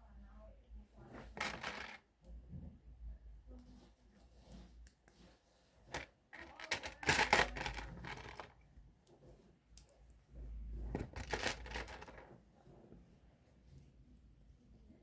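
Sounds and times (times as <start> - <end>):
plastic bricks clicking and rustling: 5.9 - 8.6, 11.0 - 12.2.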